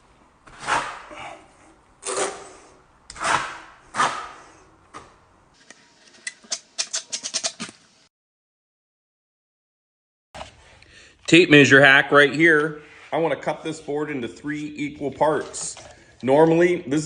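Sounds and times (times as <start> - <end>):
trowel scraping plaster on wall: 0.4 - 1.3, 2.0 - 4.6.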